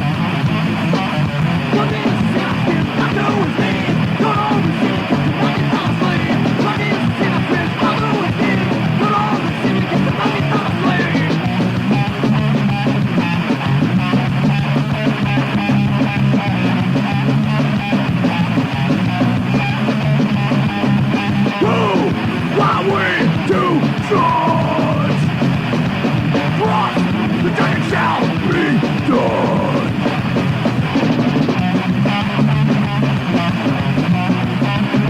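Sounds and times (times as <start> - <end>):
high guitar bends or yells: 0.0 - 14.2, 17.8 - 31.1
punk band playing: 0.0 - 35.0.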